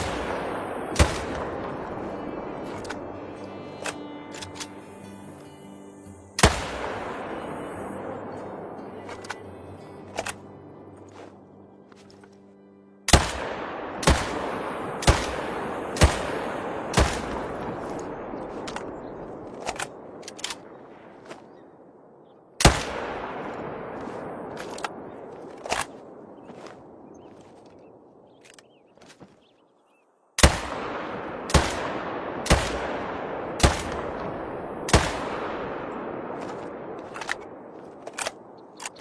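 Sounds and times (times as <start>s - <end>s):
rifle shots with echo: 0.0s - 3.2s, 6.4s - 9.5s, 13.1s - 21.2s, 21.9s - 27.1s, 30.4s - 39.0s
sharp clicks: 37.1s - 39.0s.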